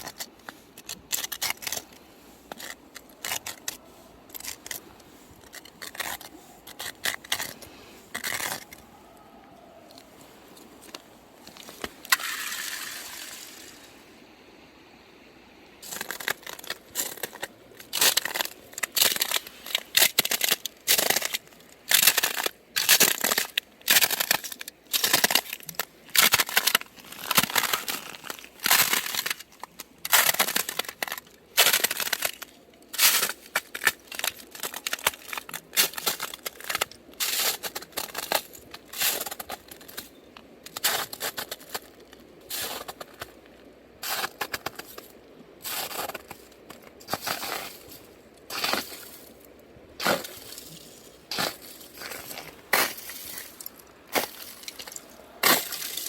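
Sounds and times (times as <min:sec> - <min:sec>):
footsteps crunching on ice: 0:00.0 - 0:08.9, 0:09.9 - 0:13.9, 0:15.8 - 0:40.1, 0:40.7 - 0:43.4, 0:45.7 - 0:56.0.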